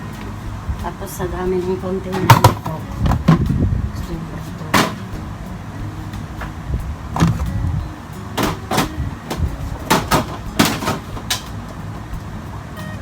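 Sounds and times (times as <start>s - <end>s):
steady low hum: 0.0s - 13.0s
items knocking on rack: 2.1s - 3.6s, 4.7s - 5.3s, 7.2s - 7.5s, 8.4s - 11.6s.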